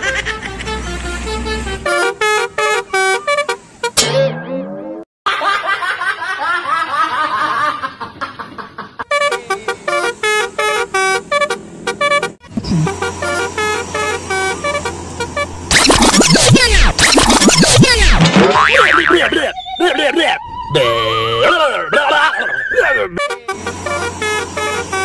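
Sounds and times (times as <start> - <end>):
multi-tone bus horn melody: 0.0 - 4.0, 9.1 - 18.0, 23.1 - 25.0.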